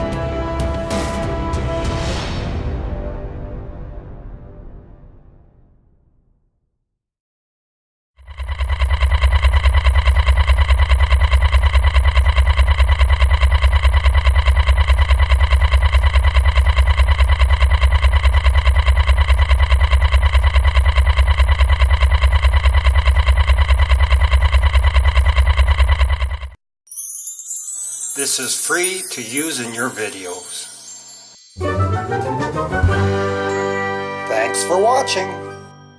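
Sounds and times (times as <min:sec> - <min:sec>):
pulsing electronic hum: 0:08.2 - 0:26.6.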